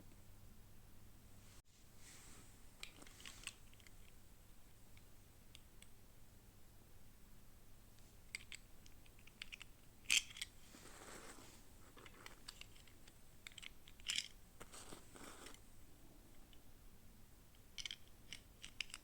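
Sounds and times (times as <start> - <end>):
soft rustle: 1.4 - 4.3, 9.4 - 16.5
plastic parts clicking and tapping: 17.6 - 19.0.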